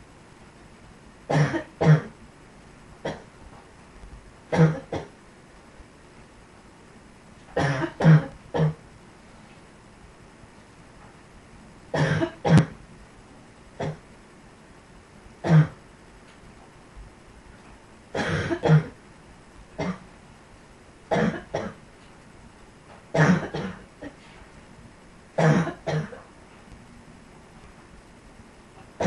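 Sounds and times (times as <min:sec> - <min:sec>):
person coughing: 0:04.5 - 0:05.1, 0:07.6 - 0:08.8, 0:12.0 - 0:12.7, 0:15.5 - 0:15.8, 0:18.2 - 0:19.0, 0:21.1 - 0:21.8, 0:23.2 - 0:24.2, 0:25.4 - 0:26.3.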